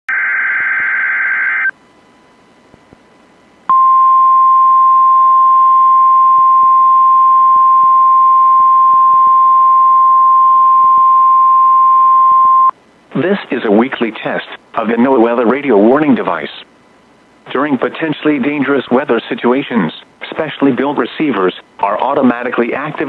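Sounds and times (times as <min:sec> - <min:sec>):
faint radio hiss: 0:00.2 - 0:03.7, 0:12.7 - 0:23.0.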